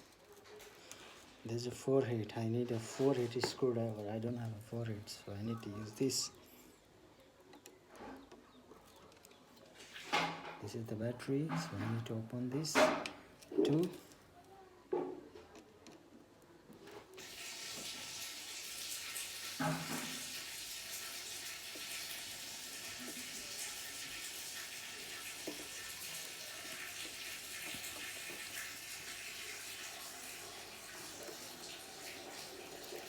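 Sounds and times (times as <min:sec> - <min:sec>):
running water hiss: 0:17.2 - 0:33.0.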